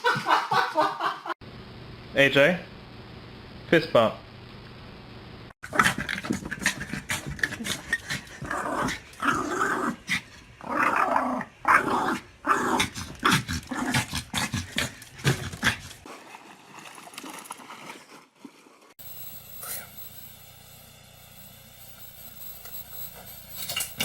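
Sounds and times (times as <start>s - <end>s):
dog growling: 5.6s - 16.0s.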